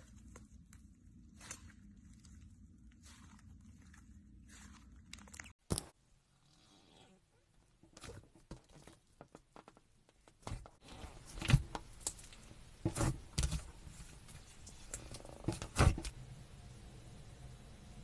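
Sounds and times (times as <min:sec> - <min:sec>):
slime squishing: 0:00.0 - 0:05.6.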